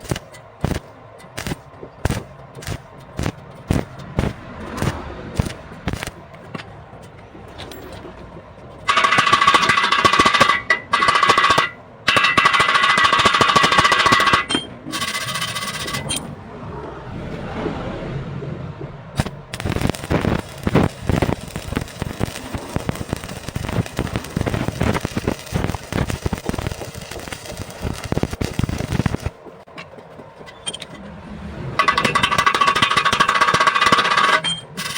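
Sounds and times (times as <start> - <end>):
welding arc crackling: 0.0 - 6.6, 8.8 - 16.1, 19.2 - 29.7, 31.8 - 34.9
high-pitched electric buzz: 19.2 - 29.4.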